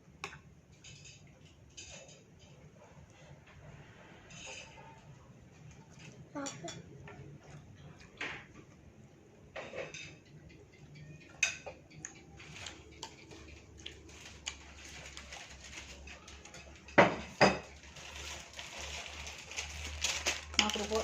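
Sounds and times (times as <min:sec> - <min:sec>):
cutlery clinking on a plate: 0:09.5 - 0:10.3.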